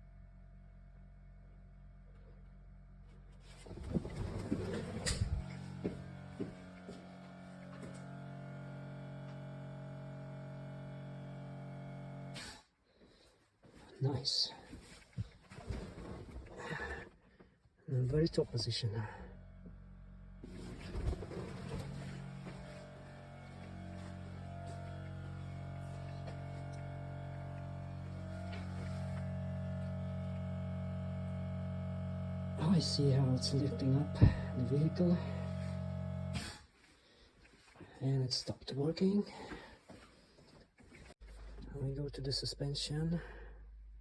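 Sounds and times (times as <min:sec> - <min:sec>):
air compressor humming: 0:03.4 - 0:12.7, 0:17.9 - 0:36.9.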